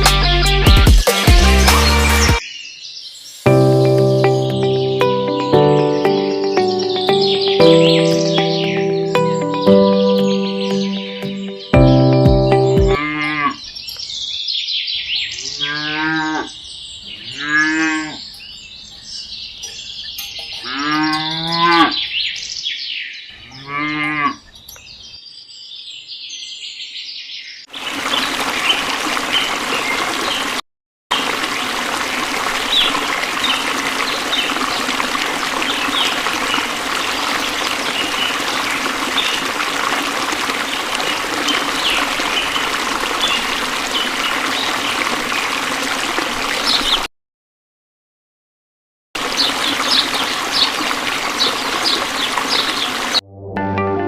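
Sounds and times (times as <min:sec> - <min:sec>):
cows mooing: 0:13.0 - 0:13.6, 0:15.4 - 0:16.6, 0:17.2 - 0:18.3, 0:20.6 - 0:22.0, 0:23.4 - 0:24.4
running water rushing: 0:27.7 - 0:47.1, 0:49.2 - 0:53.2.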